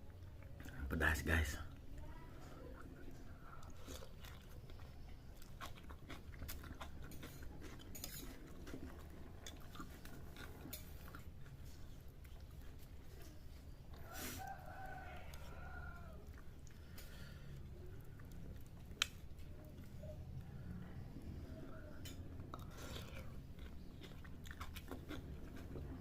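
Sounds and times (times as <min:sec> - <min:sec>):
person chewing with wet smacks: 0:01.7 - 0:20.5, 0:22.3 - 0:26.0
rooster crowing: 0:14.0 - 0:16.3.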